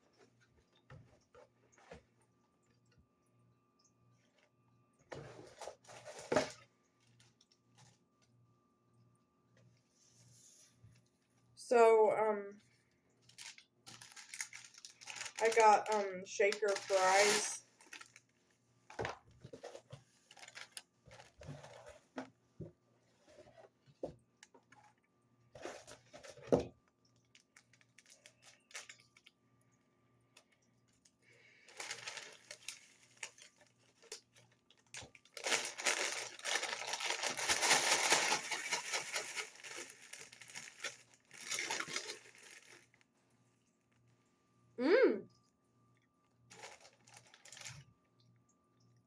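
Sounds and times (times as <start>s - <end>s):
paper packaging crinkling: 13.2s - 22.2s, 27.2s - 29.4s, 31.0s - 43.1s, 46.5s - 47.9s
paper bag rustling: 13.3s - 18.2s, 19.4s - 22.2s, 31.7s - 34.2s, 34.8s - 43.0s, 46.5s - 47.8s.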